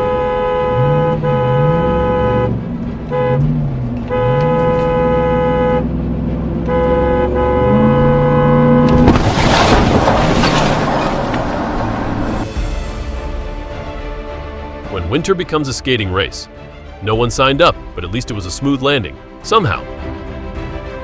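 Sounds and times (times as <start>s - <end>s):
truck horn blaring: 0.0s - 12.6s
loud crash of impact: 8.9s - 14.7s.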